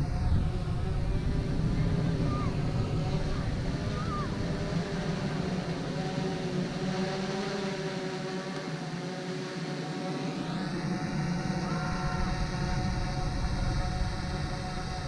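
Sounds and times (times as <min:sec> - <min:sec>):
motor hum: 0:00.0 - 0:15.0
noisy rush: 0:00.0 - 0:15.0.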